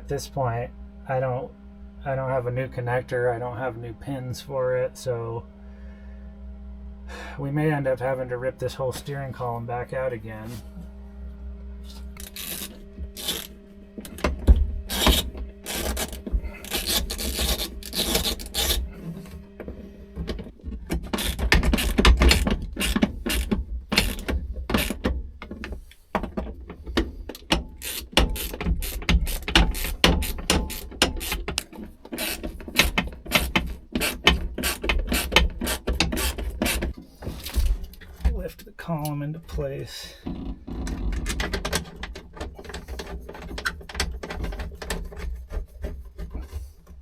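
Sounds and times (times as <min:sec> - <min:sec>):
ratchet wrench clicking: 0:12.2 - 0:14.2, 0:14.9 - 0:18.8, 0:21.2 - 0:25.0, 0:27.3 - 0:36.9.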